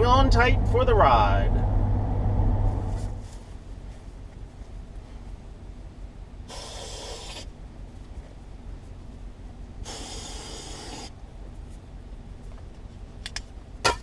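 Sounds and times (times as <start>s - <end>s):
truck engine rumble: 0.0s - 14.0s
breathy hisses: 6.5s - 7.5s, 9.8s - 11.1s.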